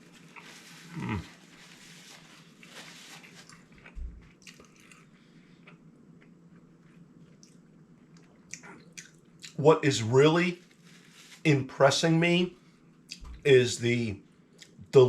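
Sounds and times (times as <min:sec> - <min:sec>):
man chewing food: 0:02.4 - 0:09.6.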